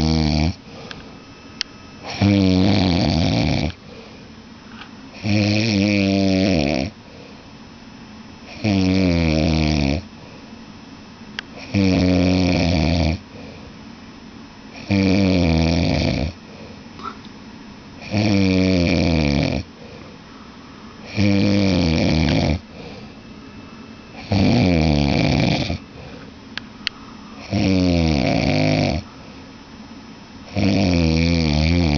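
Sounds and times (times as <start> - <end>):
loud snoring: 0.0 - 0.6, 2.0 - 3.8, 5.2 - 7.0, 8.5 - 10.0, 11.6 - 13.2, 14.7 - 16.4, 18.0 - 19.7, 21.0 - 22.6, 24.2 - 25.8, 27.4 - 29.1, 30.5 - 31.9.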